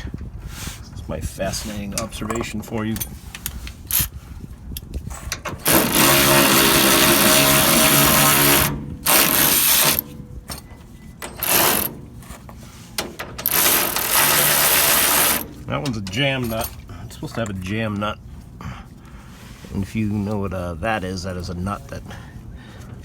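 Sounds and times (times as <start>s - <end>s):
power drill spinning nut: 3.3s - 4.1s, 5.5s - 10.2s, 11.2s - 12.0s, 13.4s - 15.6s.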